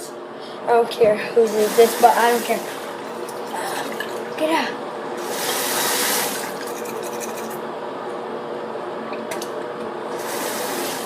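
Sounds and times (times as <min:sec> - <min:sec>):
water running from tap into sink: 0:01.4 - 0:04.4, 0:05.2 - 0:07.5, 0:10.1 - 0:11.0.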